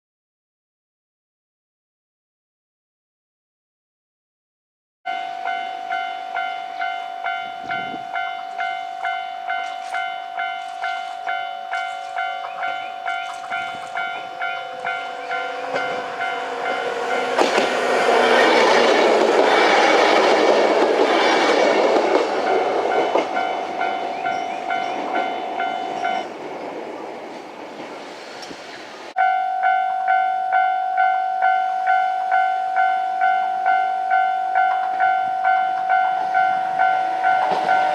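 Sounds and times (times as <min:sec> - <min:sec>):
level-crossing alarm ringing: 0:05.1 - 0:26.3, 0:29.2 - 0:37.9
electric train passing: 0:05.1 - 0:37.9
train wheel clacks: 0:06.4 - 0:28.8, 0:37.2 - 0:37.9.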